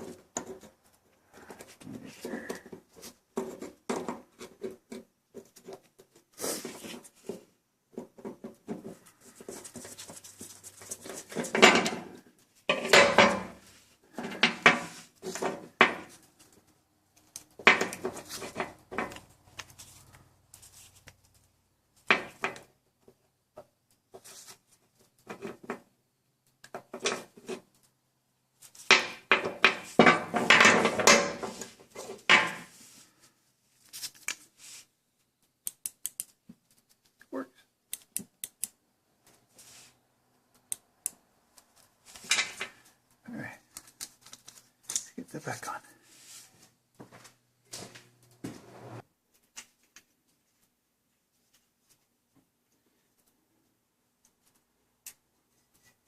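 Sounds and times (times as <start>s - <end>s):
metal parts and tools rattling: 28.9s - 32.6s.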